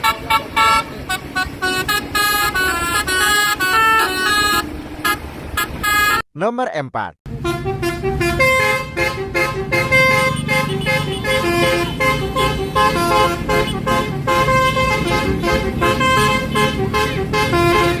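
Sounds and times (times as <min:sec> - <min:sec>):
bus engine running: 0:00.0 - 0:06.2, 0:07.3 - 0:18.0
multi-tone air horn melody: 0:00.0 - 0:06.2, 0:07.3 - 0:18.0.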